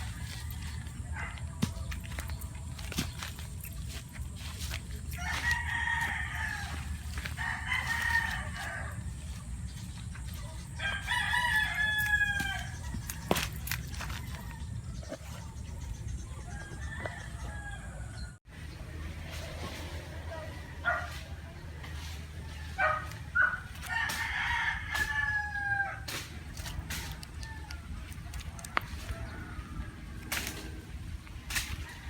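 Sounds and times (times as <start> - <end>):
rooster crowing: 5.1 - 9.5, 10.7 - 14.7, 16.4 - 18.4, 22.4 - 26.1, 26.8 - 30.5.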